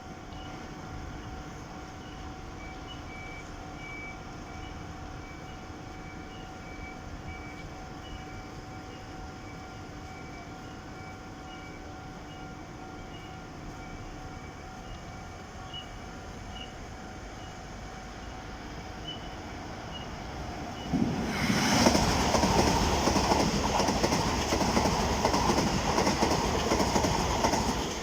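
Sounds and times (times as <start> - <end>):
level-crossing warning bell: 0.3 - 16.8.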